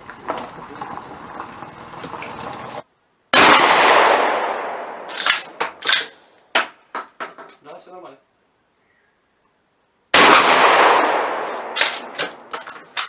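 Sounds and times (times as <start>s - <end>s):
loud gunshot with echo: 3.4s - 5.1s, 10.2s - 11.8s
handling noise with clicks: 5.0s - 7.6s, 11.5s - 13.0s.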